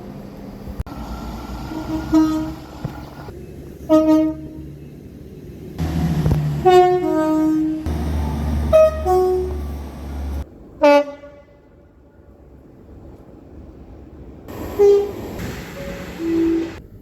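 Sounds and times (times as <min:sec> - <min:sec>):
low train rumble: 0:00.0 - 0:17.0
train two-tone horn: 0:01.7 - 0:03.1, 0:03.8 - 0:04.8, 0:05.8 - 0:12.0, 0:14.5 - 0:16.8.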